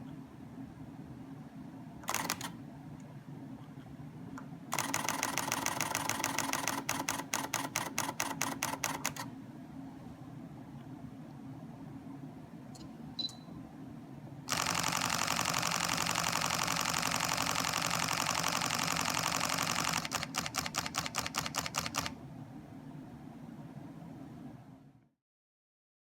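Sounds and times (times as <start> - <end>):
camera shutter burst clatter: 2.1 - 2.6, 4.7 - 9.2, 14.5 - 22.2.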